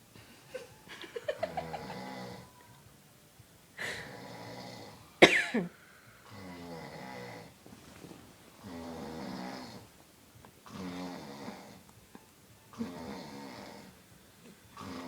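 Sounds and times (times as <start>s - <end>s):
man snoring: 1.5s - 2.6s, 3.8s - 5.1s, 6.2s - 7.6s, 8.6s - 9.9s, 10.7s - 11.8s, 12.8s - 14.0s, 14.8s - 15.0s
loud snort: 8.6s - 9.9s, 10.7s - 11.8s, 12.8s - 14.0s, 14.8s - 15.0s.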